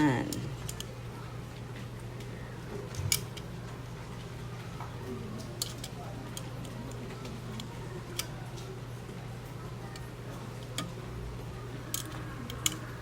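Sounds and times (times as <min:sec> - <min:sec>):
utensils clicking on cookware: 0:11.9 - 0:13.0.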